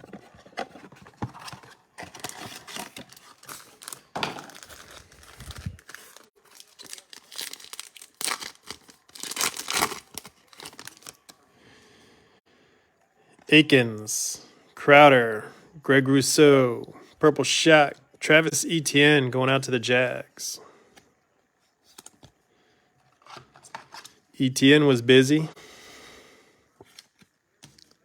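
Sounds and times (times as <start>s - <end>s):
foil wrapper tearing and crinkling: 2.2s - 11.4s.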